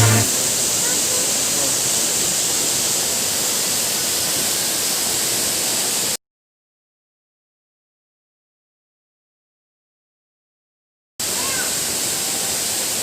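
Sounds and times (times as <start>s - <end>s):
waterfall rushing: 0.0s - 5.1s, 11.2s - 13.0s.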